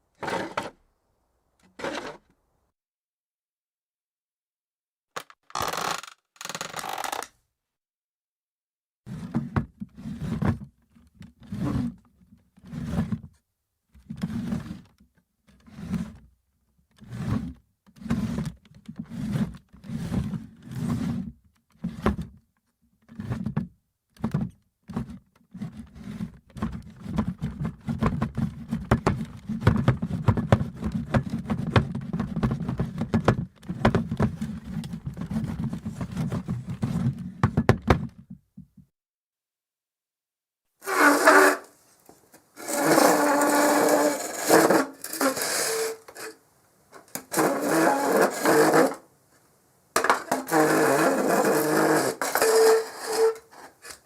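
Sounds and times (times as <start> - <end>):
wooden chair scraping on floor: 0.2 - 0.8, 1.7 - 2.3, 40.8 - 46.4, 47.0 - 49.0, 50.0 - 54.0.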